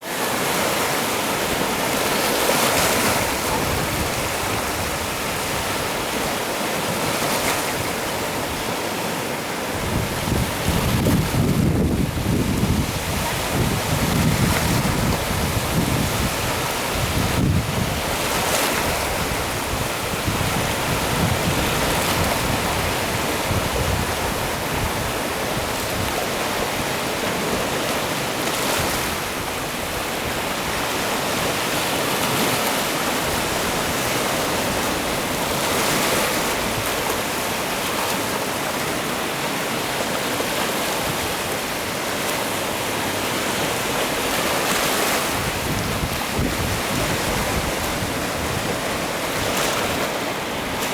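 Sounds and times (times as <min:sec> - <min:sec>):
sea waves surf: 0:00.0 - 0:50.9
wind rumbling on microphone: 0:01.5 - 0:06.4, 0:09.7 - 0:28.0, 0:44.2 - 0:50.9.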